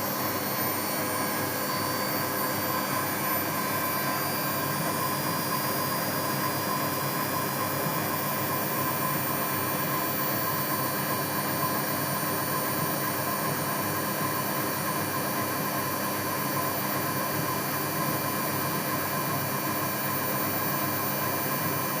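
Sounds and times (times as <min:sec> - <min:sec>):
washing machine spinning: 0:00.0 - 0:22.0.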